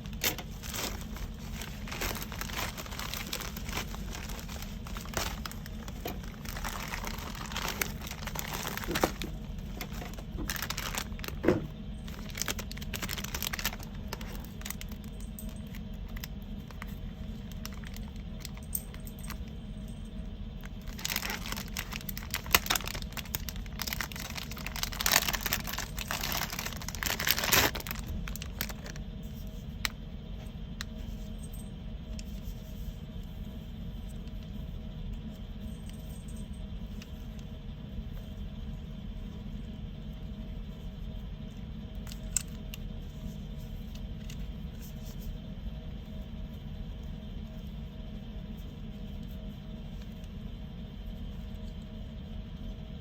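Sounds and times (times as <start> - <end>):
packaging rustling and crinkling: 0.0 - 19.5, 20.6 - 29.8
steady low hum: 0.0 - 53.0.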